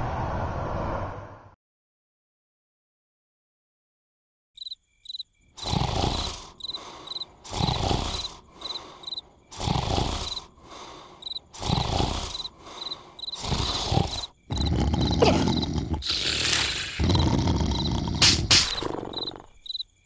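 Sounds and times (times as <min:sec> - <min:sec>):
crickets chirping: 0:04.6 - 0:20.0
cartoon snoring: 0:05.6 - 0:19.7.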